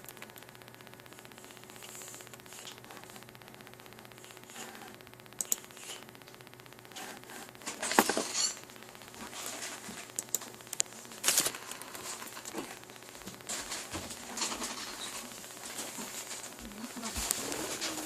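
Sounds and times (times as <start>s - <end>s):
small clicks and taps: 0.0s - 17.4s
scratchy rustles: 13.4s - 18.0s.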